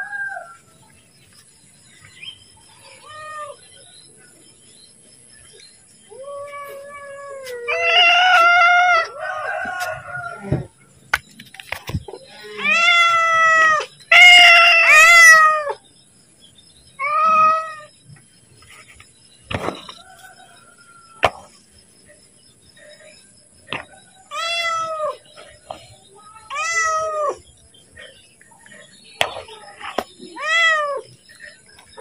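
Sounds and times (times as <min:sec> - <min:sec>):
cat meowing: 0:24.3 - 0:25.2, 0:26.5 - 0:27.4, 0:30.3 - 0:31.1.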